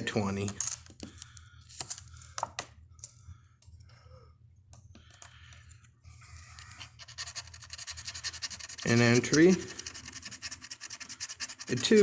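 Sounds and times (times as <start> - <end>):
coin scraping lottery ticket: 7.2 - 12.0.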